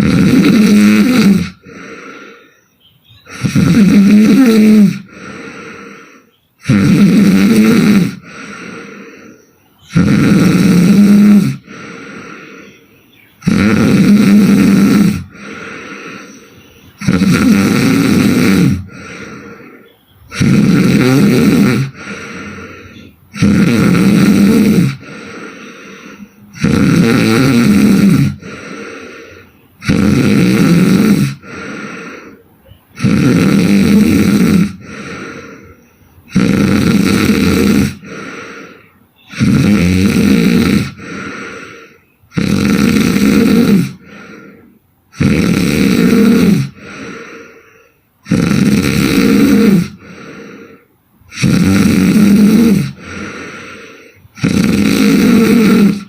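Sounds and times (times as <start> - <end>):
woman snoring loudly: 0.0 - 2.5, 3.3 - 12.8, 13.4 - 32.4, 33.0 - 56.0
quiet breathing: 1.4 - 3.6, 4.8 - 6.6, 7.9 - 10.0, 10.8 - 26.7, 27.6 - 30.0, 31.2 - 33.1, 33.9 - 36.4, 37.4 - 39.6, 40.2 - 42.4, 43.5 - 45.3, 46.1 - 48.3, 49.4 - 51.6, 52.2 - 54.4.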